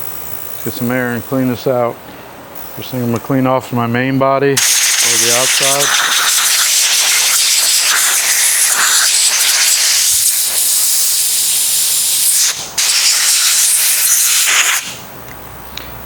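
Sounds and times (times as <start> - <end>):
compressed air blow gun hissing: 4.6 - 15.1.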